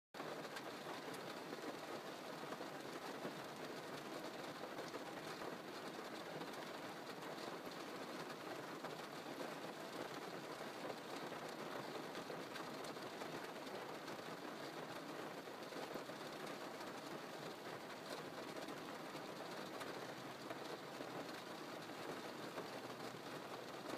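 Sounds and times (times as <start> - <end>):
rain on car roof: 0.2 - 23.9.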